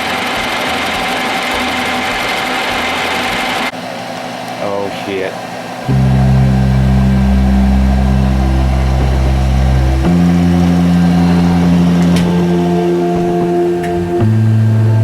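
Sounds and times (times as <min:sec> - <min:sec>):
sustained chords music: 0:05.9 - 0:15.0.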